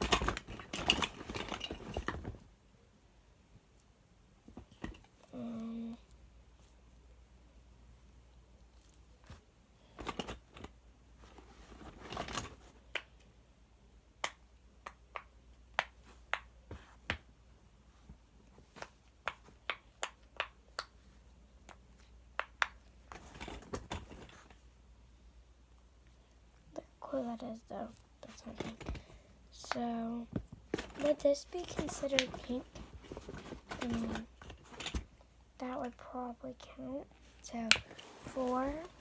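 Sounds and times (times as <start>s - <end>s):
rustling and clatter: 0.0s - 2.5s, 4.4s - 5.3s, 8.7s - 12.8s, 23.0s - 24.7s, 27.9s - 29.3s, 30.2s - 35.2s, 37.1s - 39.0s.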